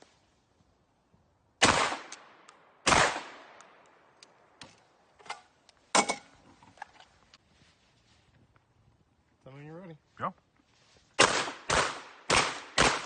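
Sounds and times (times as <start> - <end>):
shotgun shots echoing: 1.6 - 3.6, 11.2 - 13.0.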